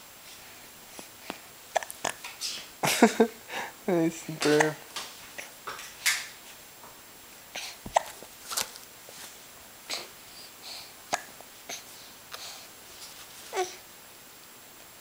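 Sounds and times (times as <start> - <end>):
baby hiccuping: 7.9 - 8.2.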